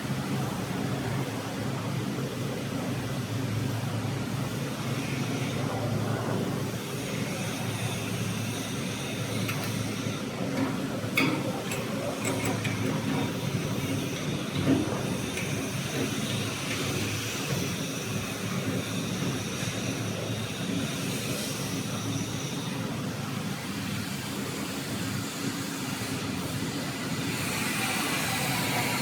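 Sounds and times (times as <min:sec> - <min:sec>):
grinding mill running: 0:06.6 - 0:29.0.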